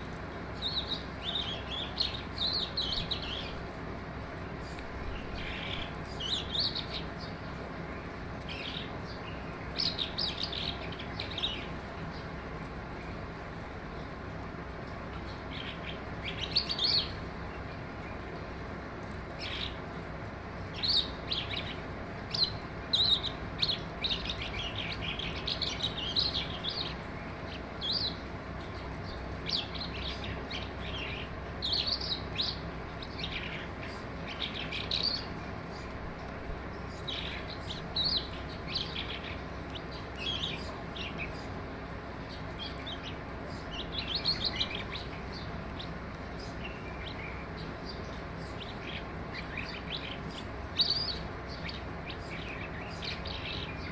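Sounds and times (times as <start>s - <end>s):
skylark singing: 36.7s - 41.6s, 42.2s - 53.9s.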